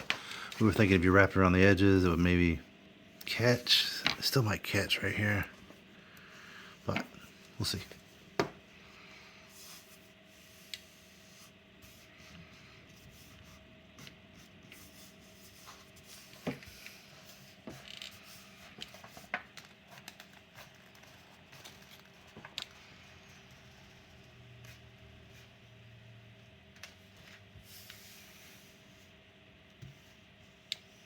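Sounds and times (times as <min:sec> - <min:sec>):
faint steady hum: 0:00.0 - 0:31.0
vinyl skin rubbing and clicks: 0:17.6 - 0:22.8.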